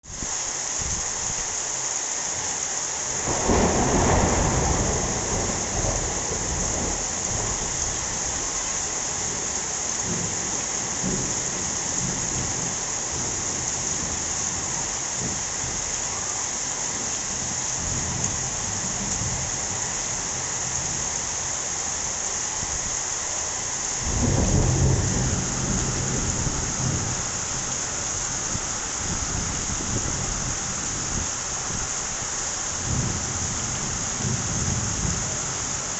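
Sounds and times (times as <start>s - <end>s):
heavy rain hissing: 0.0s - 35.9s
thunder rumbling: 3.2s - 15.8s, 24.0s - 31.9s, 32.8s - 35.9s.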